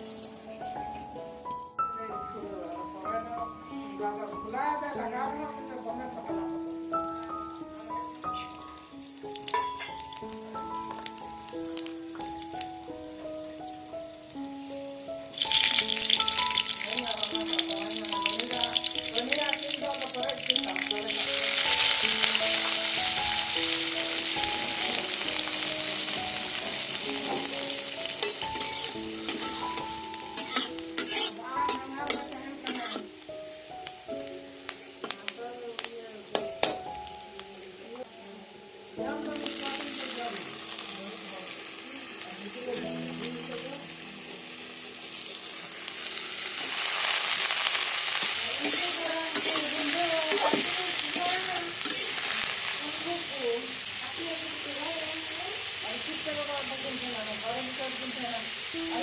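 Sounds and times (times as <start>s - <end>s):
vegetables sizzling in oil: 0.0s - 1.3s, 3.9s - 59.0s
instrumental melody of held notes: 0.0s - 46.0s
spatula scraping a pan: 30.4s - 33.1s, 48.2s - 52.3s.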